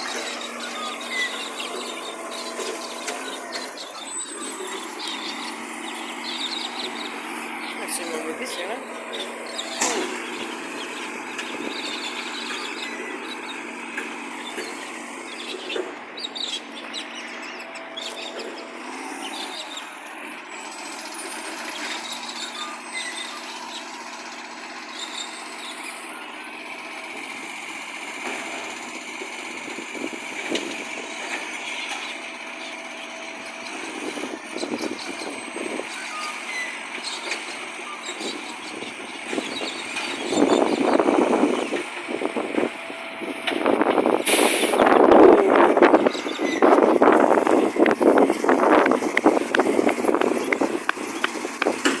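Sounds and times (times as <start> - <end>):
garbage truck engine running: 0.0 - 52.0
knocks and rattles: 46.7 - 52.0.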